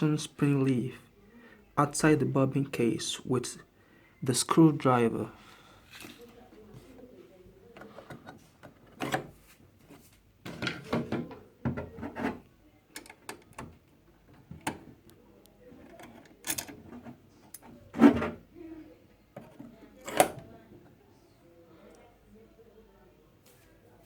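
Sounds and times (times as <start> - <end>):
clicks taps and knocks of handling: 9.9 - 18.4.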